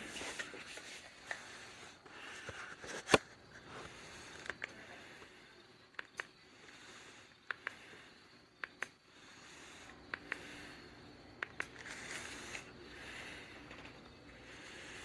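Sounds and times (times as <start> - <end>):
ceiling fan air hiss: 0.0 - 15.0
sharp ticks: 7.4 - 7.8, 8.6 - 9.0, 11.4 - 12.6.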